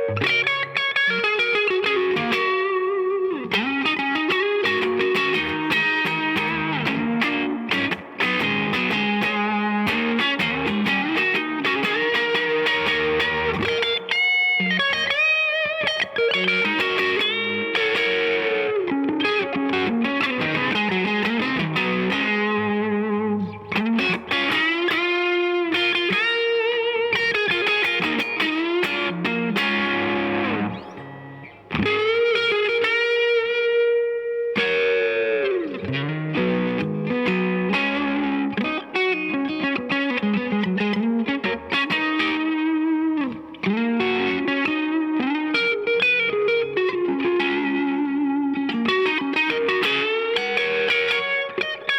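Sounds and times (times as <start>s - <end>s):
electric guitar lead lines: 0.0s - 51.9s.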